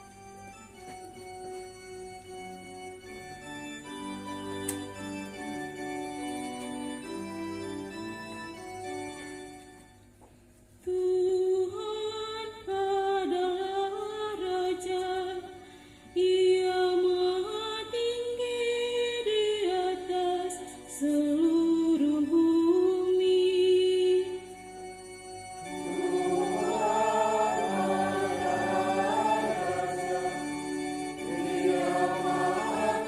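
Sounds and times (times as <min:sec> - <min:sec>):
person singing a hymn: 0:25.6 - 0:33.0.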